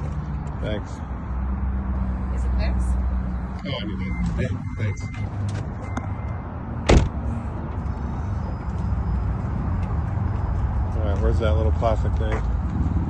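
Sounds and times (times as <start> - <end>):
car door shutting: 6.8 - 7.2.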